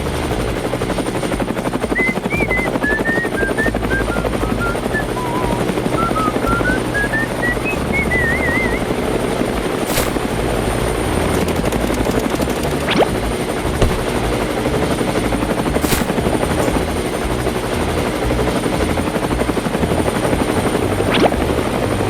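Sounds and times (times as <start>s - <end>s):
small motor chattering: 0.0s - 22.0s
brief rising whistle: 1.9s - 9.0s.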